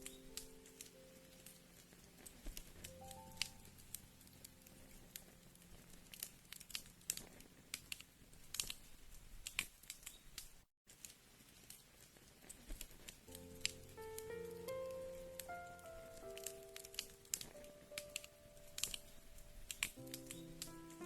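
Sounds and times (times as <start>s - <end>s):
soft music: 0.0s - 8.1s, 13.2s - 21.0s
faint hiss: 0.0s - 21.0s
wood fire crackling: 0.0s - 21.0s.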